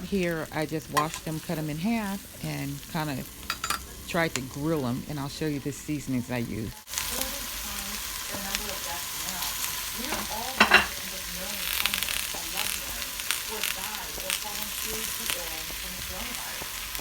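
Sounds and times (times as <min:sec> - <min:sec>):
food sizzling in a skillet: 0:00.0 - 0:17.0.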